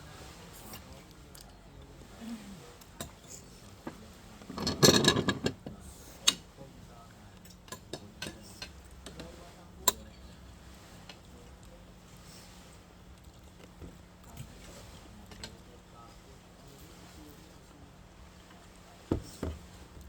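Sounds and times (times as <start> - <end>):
cutlery and dishes clinking: 4.5 - 5.6.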